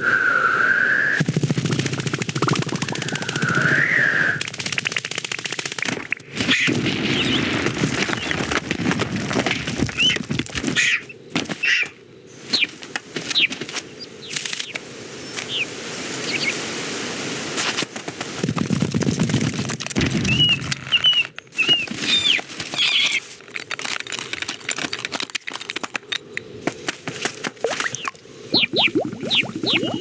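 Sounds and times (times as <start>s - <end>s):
rapid wing flaps: 1.2s - 10.8s.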